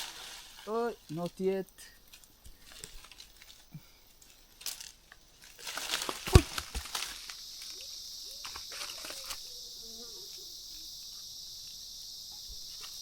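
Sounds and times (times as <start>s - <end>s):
leaves and branches rustling: 0.0s - 11.9s
high insect buzz: 0.0s - 13.0s
fruit thudding on ground: 5.6s - 7.4s.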